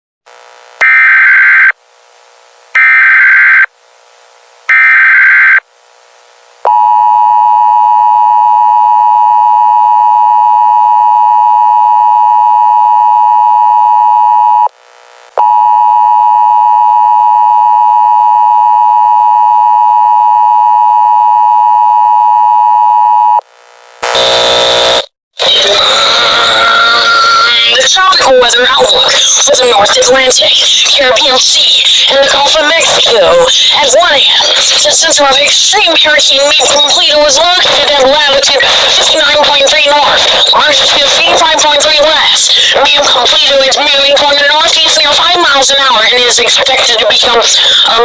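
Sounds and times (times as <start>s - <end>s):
screeching digital data tones: 2.8s - 3.7s.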